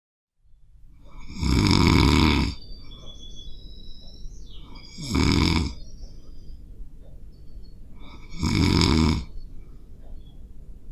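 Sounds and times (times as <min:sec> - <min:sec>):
person snoring heavily: 0:01.1 - 0:02.6, 0:04.8 - 0:05.8, 0:08.0 - 0:09.3.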